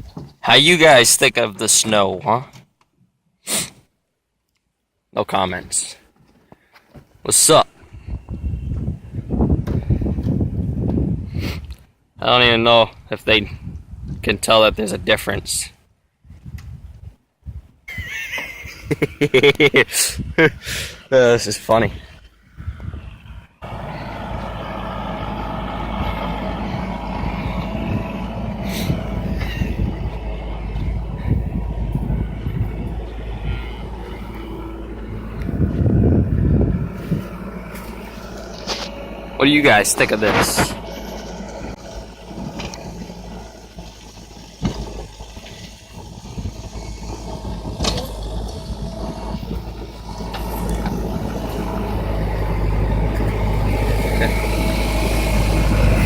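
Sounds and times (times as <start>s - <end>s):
engine running: 21.4s - 56.0s.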